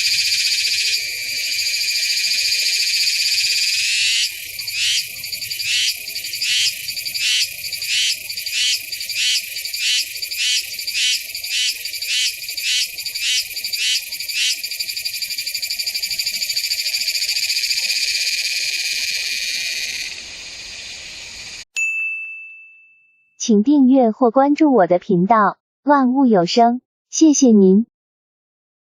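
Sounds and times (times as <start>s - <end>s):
cicada buzzing: 0.0s - 21.6s.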